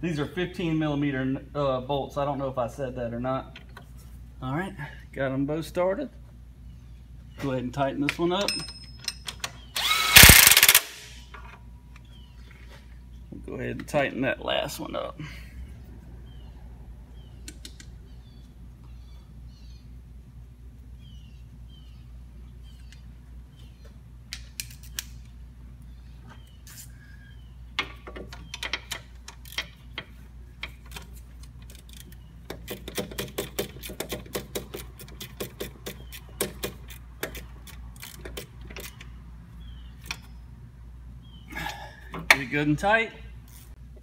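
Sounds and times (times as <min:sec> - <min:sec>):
low steady hum: 0:00.0 - 0:44.0
hand ratchet clicking: 0:28.5 - 0:39.1.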